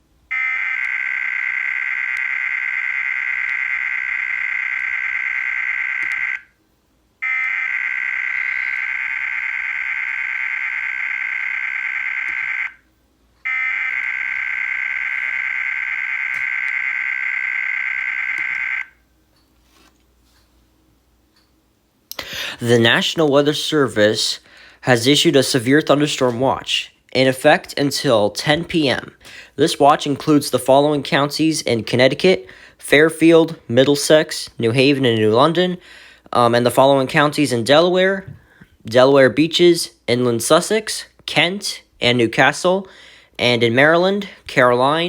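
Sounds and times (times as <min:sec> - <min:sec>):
buzzing digital data warble: 0:00.4 - 0:06.5, 0:07.2 - 0:12.8.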